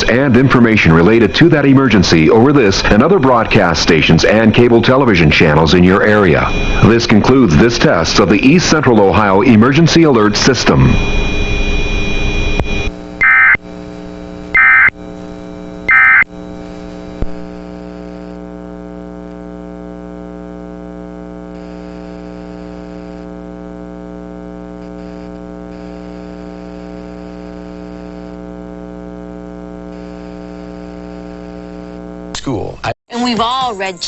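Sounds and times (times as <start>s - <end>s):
electrical buzz and hum: 0.0s - 32.8s
warbling data bursts: 0.6s - 13.6s, 14.6s - 14.9s, 15.9s - 16.2s.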